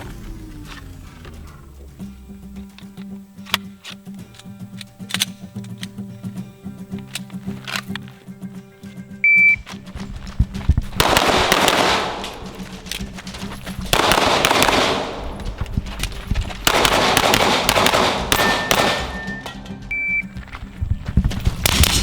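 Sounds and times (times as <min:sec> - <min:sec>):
background music: 0:00.0 - 0:22.0
shot timer beep: 0:09.2 - 0:09.6, 0:18.4 - 0:20.4
pistol shots: 0:10.9 - 0:19.7, 0:21.4 - 0:22.0.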